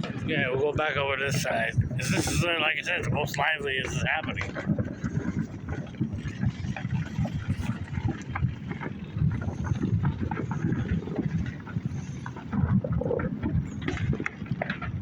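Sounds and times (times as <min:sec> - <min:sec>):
fireworks bangs and pops: 0:00.0 - 0:15.0
wind buffeting microphone: 0:00.0 - 0:15.0.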